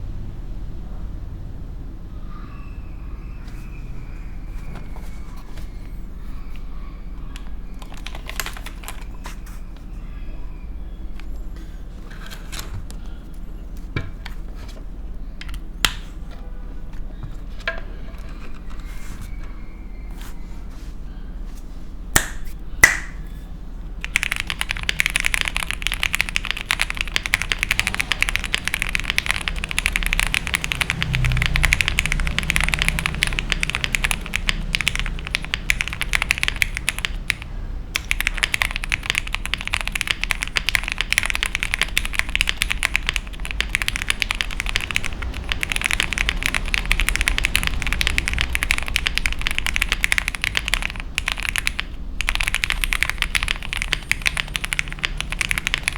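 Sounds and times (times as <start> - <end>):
mechanical keyboard typing: 7.3 - 9.5, 24.0 - 55.9.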